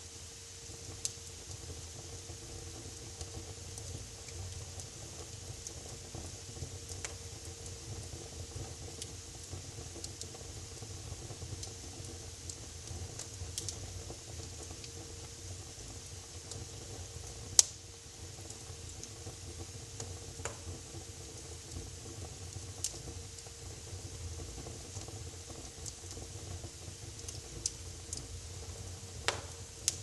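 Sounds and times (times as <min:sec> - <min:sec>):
fire hissing and rumbling: 0:00.0 - 0:30.0
small fire crackles: 0:00.0 - 0:30.0
loud sharp pop: 0:29.3 - 0:29.6.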